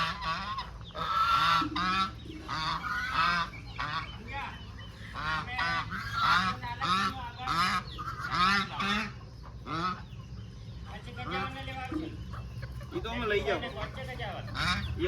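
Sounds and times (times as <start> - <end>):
geese honking: 0.0 - 15.0.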